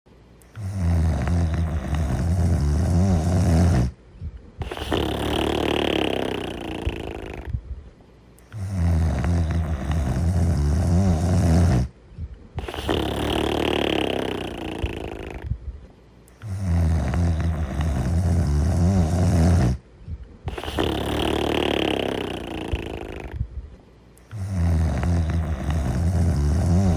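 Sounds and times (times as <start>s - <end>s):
person snoring: 0.5s - 4.0s, 4.6s - 7.6s, 8.5s - 11.9s, 12.6s - 15.6s, 16.4s - 19.8s, 20.5s - 23.4s, 24.2s - 26.9s.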